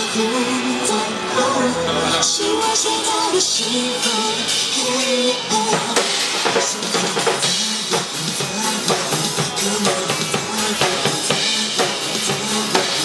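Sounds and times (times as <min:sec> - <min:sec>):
live instrumental band: 0:00.0 - 0:13.0
drum kit beat: 0:02.4 - 0:13.0.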